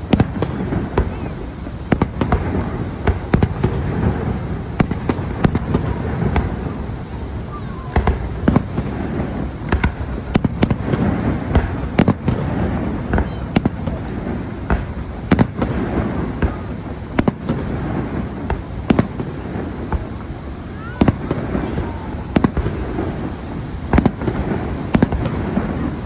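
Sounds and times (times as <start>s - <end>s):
fireworks sharp bangs: 0.0s - 26.0s
steady background noise: 0.0s - 26.0s.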